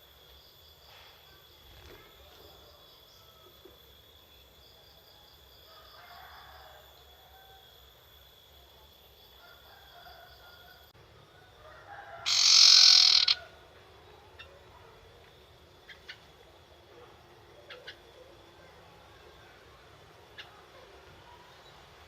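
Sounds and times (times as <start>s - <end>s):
harsh bird call: 12.2s - 13.5s.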